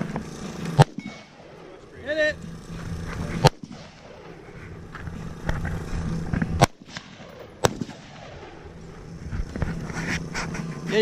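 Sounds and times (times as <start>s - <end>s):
rifle firing single shots: 0.0s - 1.9s, 2.7s - 5.2s, 5.8s - 8.9s.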